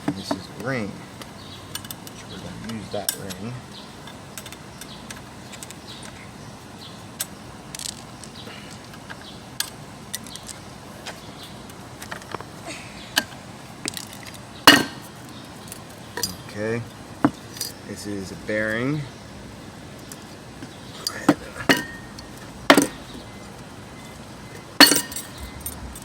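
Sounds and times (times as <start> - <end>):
metal clutch plates clinking: 13.2 - 17.8, 21.0 - 26.0
metal clank: 14.7 - 15.1, 21.0 - 23.2, 24.8 - 26.0.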